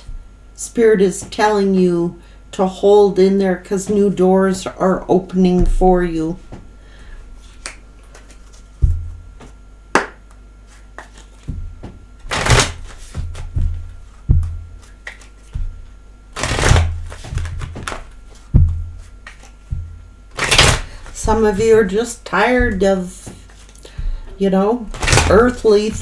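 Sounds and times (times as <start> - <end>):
cards sliding: 7.4 - 8.6, 12.2 - 13.7, 16.4 - 18.5, 20.3 - 21.7, 24.9 - 26.0
cards thumping and tapping on table: 10.9 - 21.9.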